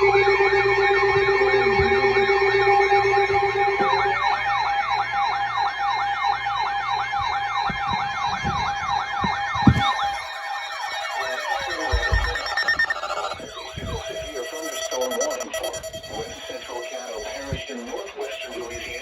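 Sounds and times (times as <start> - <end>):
electronic siren yelping: 0.0 - 19.0
low tone: 0.0 - 19.0
high alert tones: 9.7 - 19.0.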